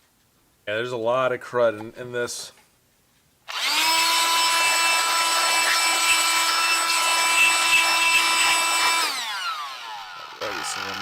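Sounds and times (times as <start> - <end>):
electric blower whining: 3.5 - 11.0.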